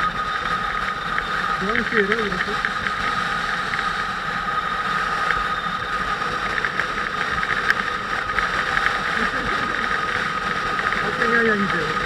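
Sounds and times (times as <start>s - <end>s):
constant high whine: 0.0s - 12.0s
motorcycle engine running: 0.0s - 12.0s.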